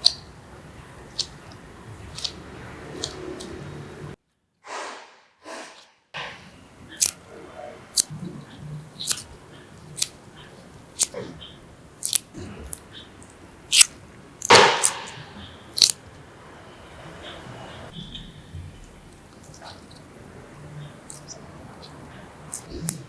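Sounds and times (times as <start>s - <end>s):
sharp clicks and knocks: 13.8s - 16.0s.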